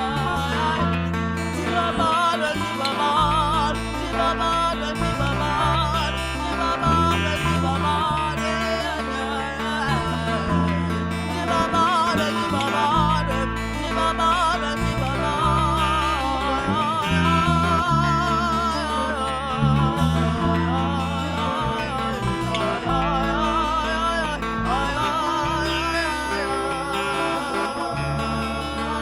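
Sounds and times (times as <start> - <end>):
low bass notes: 0.0 - 29.0
plucked guitar: 0.0 - 29.0
woman singing: 0.0 - 29.0.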